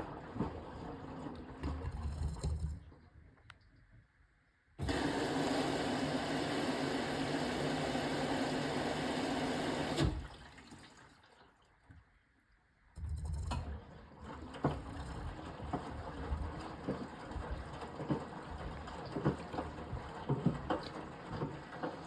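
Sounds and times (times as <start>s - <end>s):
water rushing into washing machine: 0.0s - 3.1s, 4.8s - 12.0s, 13.0s - 22.0s
drum turning with low rumble: 14.6s - 22.0s.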